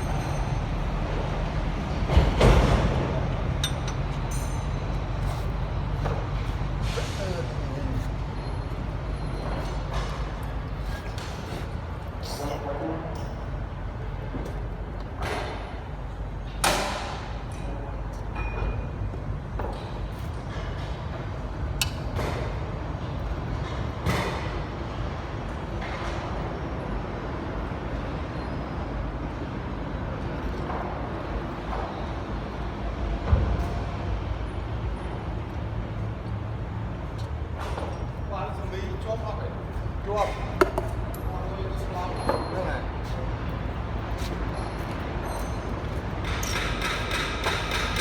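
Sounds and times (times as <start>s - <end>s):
low hum of machinery: 0.0s - 48.0s
sharp metallic knocks and clanks: 2.0s - 6.4s, 16.6s - 17.7s, 40.2s - 41.1s, 45.3s - 48.0s.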